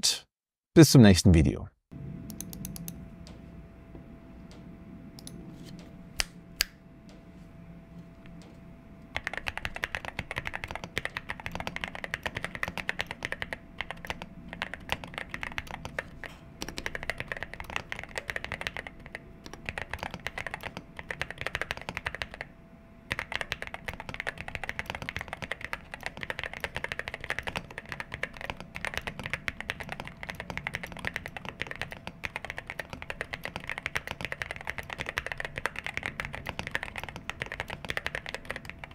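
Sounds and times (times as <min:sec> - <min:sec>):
fast mechanical keyboard typing: 0:09.1 - 0:22.5, 0:23.1 - 0:38.9.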